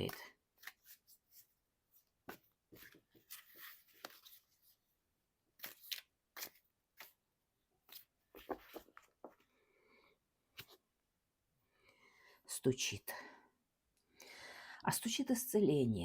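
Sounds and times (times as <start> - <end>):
cards rustling and tapping: 0.0 - 1.5, 2.2 - 4.5, 5.6 - 7.2, 7.8 - 9.5.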